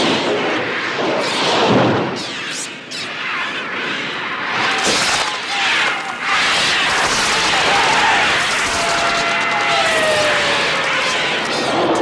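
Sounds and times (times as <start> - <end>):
electronic screeching shrieks: 4.7 - 11.6.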